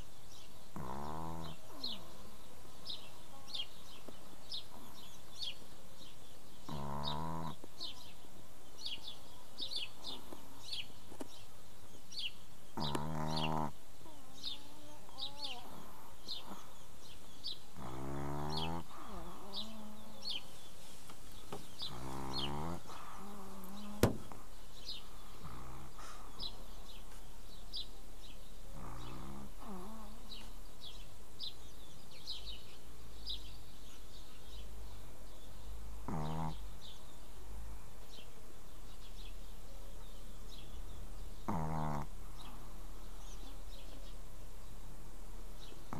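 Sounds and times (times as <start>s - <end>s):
birds chirping: 0.0s - 45.9s
dog snoring: 0.7s - 2.2s, 6.7s - 7.9s, 12.8s - 16.7s, 17.8s - 20.4s, 21.8s - 24.2s, 25.4s - 26.5s, 28.7s - 30.3s, 36.0s - 36.7s, 41.4s - 42.6s.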